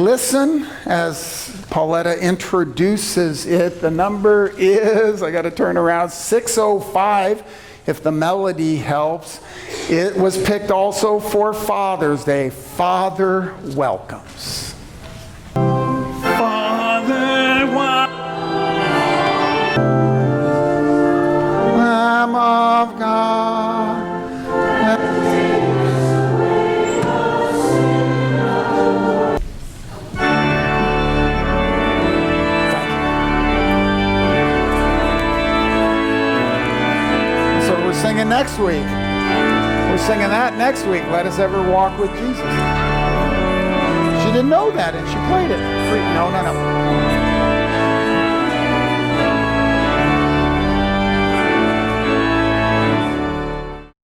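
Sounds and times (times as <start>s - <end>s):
church organ playing a hymn: 0.0s - 13.8s, 15.6s - 29.4s, 30.1s - 54.0s
voices singing: 16.2s - 20.2s, 21.6s - 29.4s.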